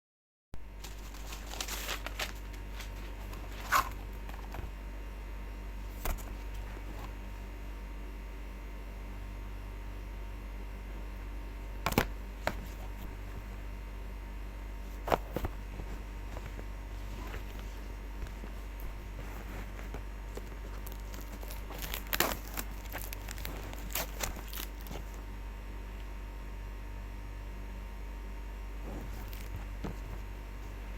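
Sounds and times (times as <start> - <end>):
steady low hum: 0.6 - 30.9
packaging rustling: 0.7 - 4.8, 14.9 - 25.2, 28.9 - 30.3
packaging clicks: 0.8 - 4.6, 20.3 - 25.2.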